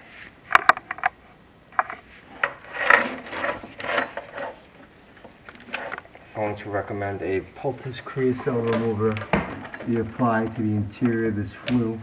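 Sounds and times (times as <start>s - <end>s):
sharp clicks and knocks: 0.5s - 6.2s
camera rig scraping against flue: 1.8s - 6.7s.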